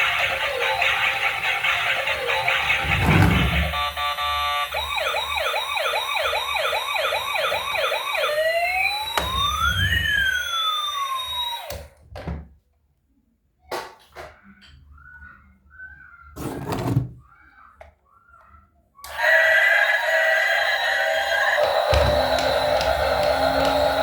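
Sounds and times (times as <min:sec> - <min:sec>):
toy siren: 0:00.0 - 0:11.9, 0:17.5 - 0:24.0.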